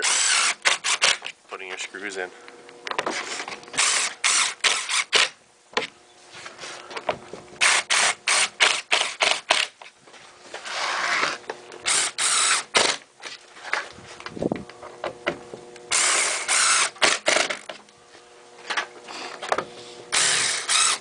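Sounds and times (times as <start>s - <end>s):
cordless drill driving screws: 0.0s - 1.3s, 3.1s - 5.4s, 7.6s - 9.7s, 10.6s - 13.0s, 15.9s - 17.8s, 20.1s - 21.0s.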